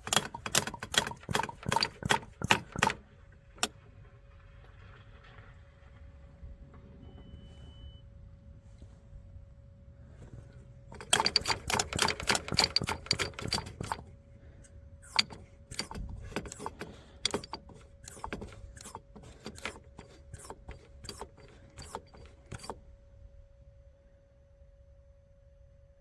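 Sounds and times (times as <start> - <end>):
quick mechanical clicking: 0.0 - 3.8, 10.9 - 14.2, 15.0 - 22.8
faint electric pump hum: 0.0 - 3.9, 6.5 - 26.0.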